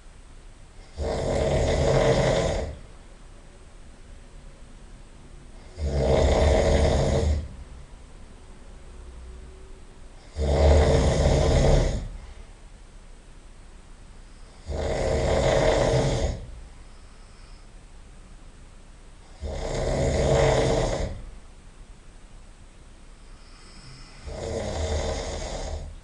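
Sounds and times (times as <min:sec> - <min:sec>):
person snoring loudly: 0:00.8 - 0:02.8, 0:05.6 - 0:07.6, 0:10.2 - 0:12.2, 0:14.4 - 0:16.6, 0:19.2 - 0:21.3, 0:23.3 - 0:26.0.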